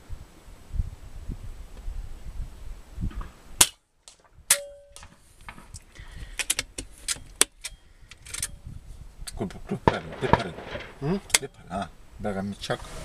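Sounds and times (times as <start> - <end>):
pellet strike with metallic ring: 4.5 - 5.2
air rifle firing: 9.8 - 11.0.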